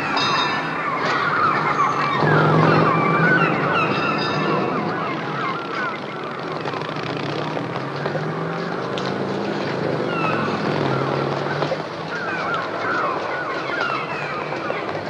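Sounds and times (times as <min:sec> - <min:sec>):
gulls crying: 0:00.0 - 0:15.0
traffic engine drone: 0:00.0 - 0:15.0.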